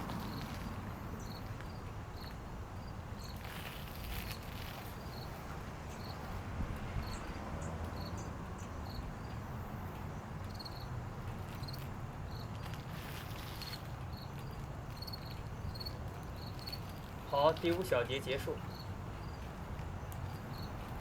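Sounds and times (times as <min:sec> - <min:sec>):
low outdoor rumble: 0:00.0 - 0:21.0
high insect-like chirps: 0:00.1 - 0:06.2, 0:10.4 - 0:17.8, 0:18.7 - 0:19.5, 0:20.1 - 0:20.9.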